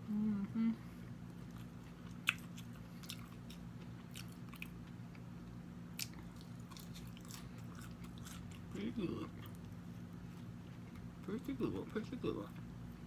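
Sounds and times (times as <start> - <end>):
faint electrical hum: 0.0 - 13.0
person chewing food: 1.1 - 11.3.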